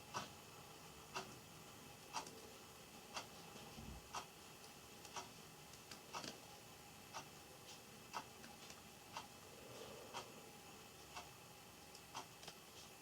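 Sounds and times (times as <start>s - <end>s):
clock ticking: 1.1s - 1.4s, 2.0s - 2.4s, 3.1s - 3.4s, 4.0s - 6.4s, 7.1s - 9.4s, 11.0s - 12.6s
faint irregular clicks: 1.1s - 1.4s, 2.0s - 2.5s, 3.1s - 3.3s, 4.1s - 6.4s, 7.1s - 9.4s, 10.1s - 10.4s, 11.0s - 13.0s.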